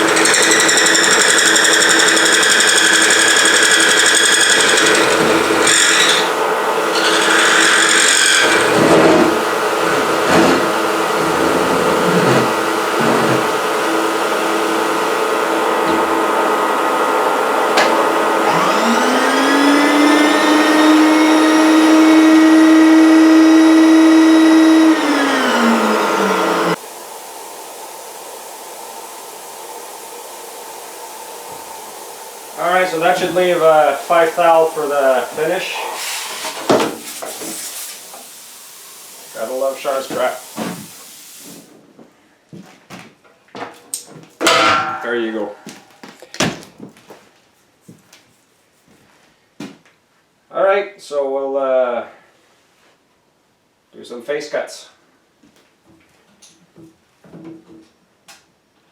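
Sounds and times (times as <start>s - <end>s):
motor whine: 0.0s - 35.5s
milling machine cutting metal: 0.0s - 35.8s.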